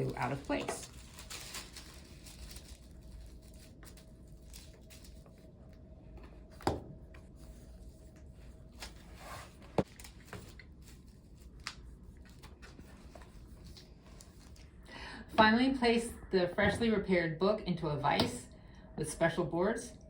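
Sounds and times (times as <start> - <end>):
paper rustling: 0.0 - 5.4, 8.8 - 14.6.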